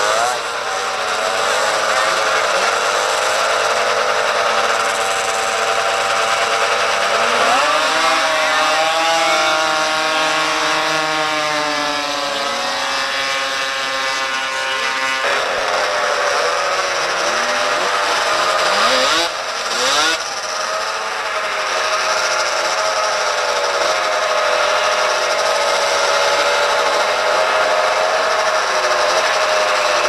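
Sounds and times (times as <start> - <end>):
snowmobile engines revving: 0.0 - 30.0.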